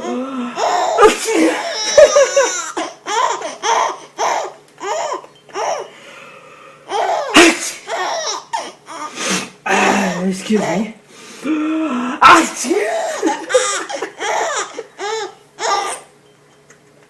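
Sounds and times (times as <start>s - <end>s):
baby laughing: 0.6s - 5.9s, 6.9s - 9.1s, 12.7s - 16.1s.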